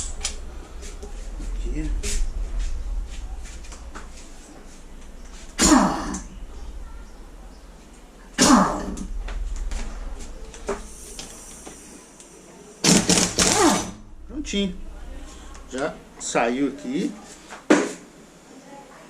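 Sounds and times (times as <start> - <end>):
pneumatic impact wrench bursts: 12.8 - 14.0.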